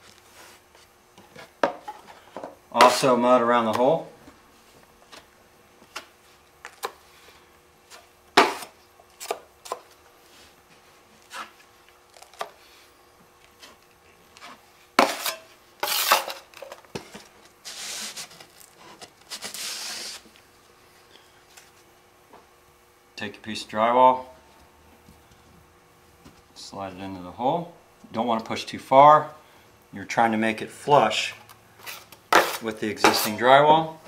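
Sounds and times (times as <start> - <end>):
drywall knife scraping: 14.4 - 16.4, 17.6 - 20.3, 31.8 - 33.4.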